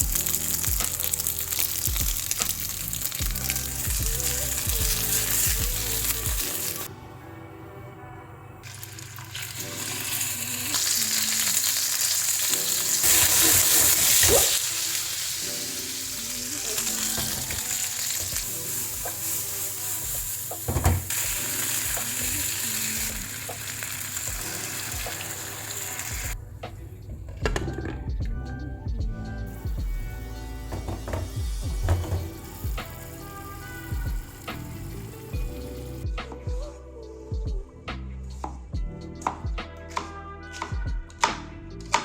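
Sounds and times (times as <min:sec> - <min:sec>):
food sizzling in a pan: 0:00.0 - 0:06.9, 0:08.7 - 0:26.4, 0:29.5 - 0:36.0
faint background music: 0:00.0 - 0:42.0.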